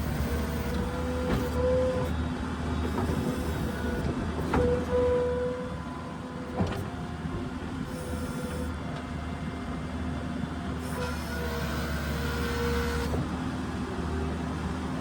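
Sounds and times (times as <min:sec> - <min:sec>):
diesel engine running: 0:00.0 - 0:04.8
engine whine: 0:00.0 - 0:15.0.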